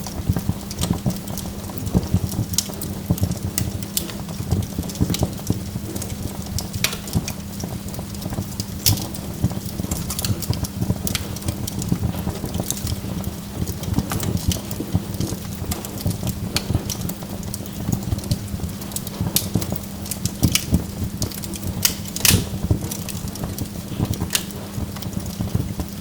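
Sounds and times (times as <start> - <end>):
wood fire crackling: 0.0 - 26.0.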